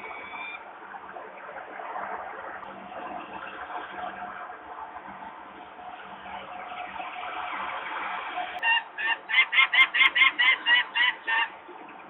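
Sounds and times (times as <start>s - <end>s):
mechanical background noise: 0.0s - 12.0s.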